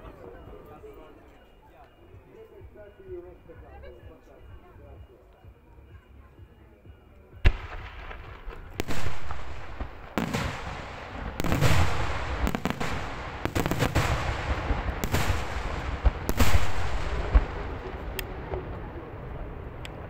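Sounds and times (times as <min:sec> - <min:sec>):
fireworks bangs with rolling echo: 0:07.4 - 0:20.0
small firework cracks: 0:07.5 - 0:18.9.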